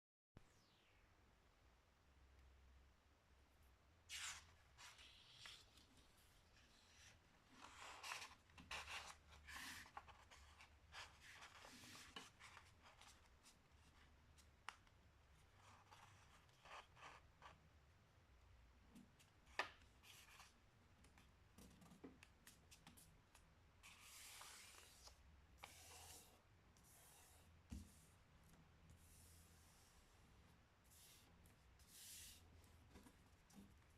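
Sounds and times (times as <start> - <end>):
paper rustling and folding: 7.6 - 13.5.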